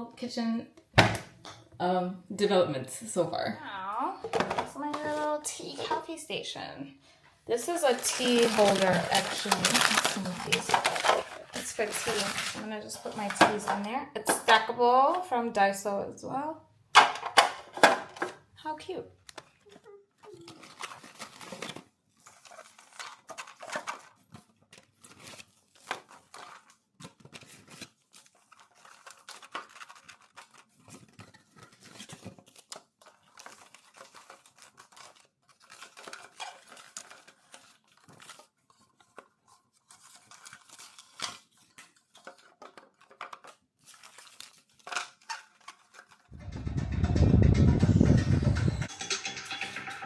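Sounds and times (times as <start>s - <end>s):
packaging rustling and tearing: 7.5s - 13.5s, 19.2s - 46.3s.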